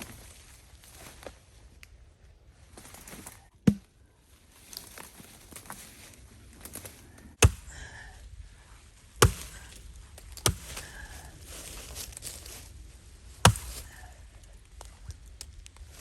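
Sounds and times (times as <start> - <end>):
axe striking wood: 3.6 - 3.9, 7.4 - 7.8, 9.2 - 9.8, 10.4 - 10.9, 13.4 - 13.9.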